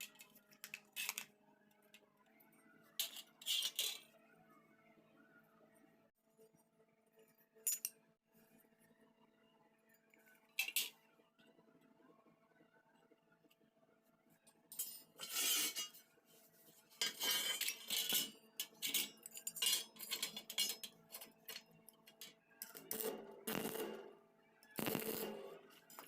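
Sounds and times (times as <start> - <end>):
metal clinking and scraping: 0.0 - 1.3, 3.0 - 4.2, 10.6 - 11.0, 14.7 - 16.0, 16.9 - 24.2, 24.8 - 26.0.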